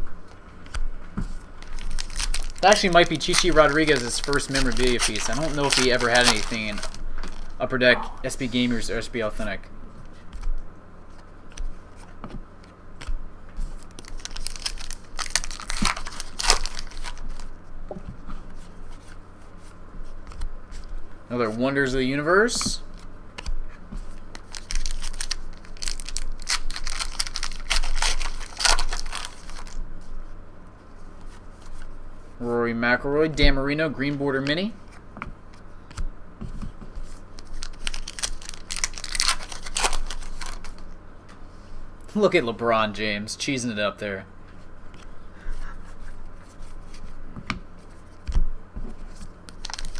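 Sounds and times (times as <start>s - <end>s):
cards clicking: 0.6s - 7.6s, 11.5s - 17.5s, 22.9s - 29.8s
foil wrapper crinkling and tearing: 1.6s - 9.6s, 13.6s - 17.6s, 24.1s - 29.8s, 37.1s - 40.9s, 49.5s - 49.9s.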